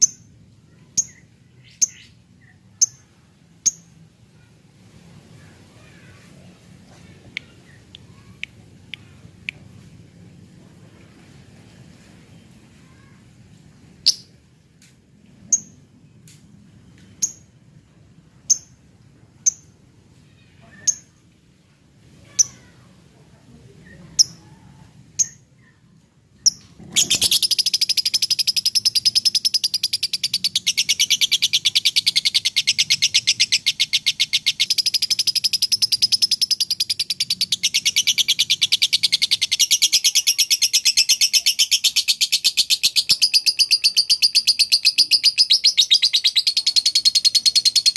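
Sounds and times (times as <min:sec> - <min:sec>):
lovebird chirping and trilling: 0:00.8 - 0:03.9, 0:14.0 - 0:14.3, 0:26.4 - 0:47.9.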